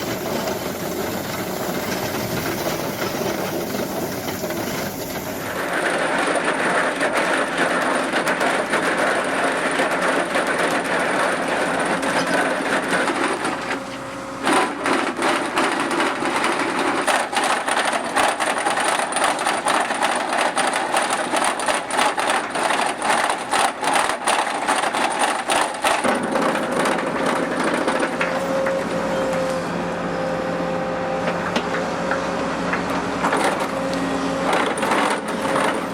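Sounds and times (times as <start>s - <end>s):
knocks and rattles: 14.4s - 28.2s.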